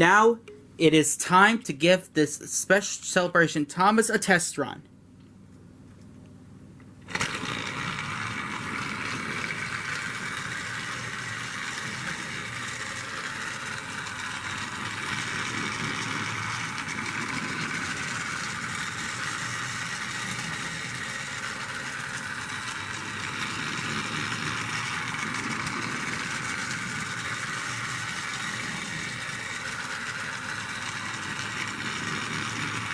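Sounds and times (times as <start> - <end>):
toy train motor whirring: 7.1 - 32.9.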